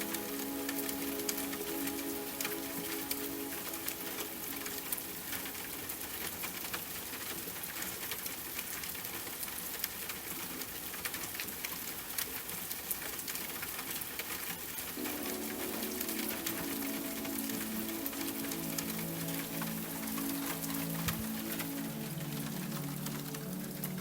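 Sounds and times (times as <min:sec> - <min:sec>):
rain hiss: 0:00.0 - 0:24.0
raindrops ticking: 0:00.0 - 0:24.0.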